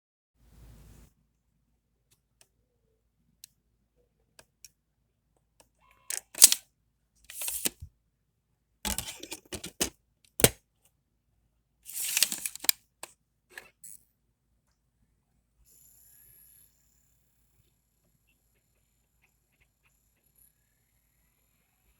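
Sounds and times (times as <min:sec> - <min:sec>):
disc drive clicks and plastic clatters: 0:06.1 - 0:06.6, 0:07.3 - 0:07.9, 0:08.9 - 0:10.6, 0:11.9 - 0:12.8.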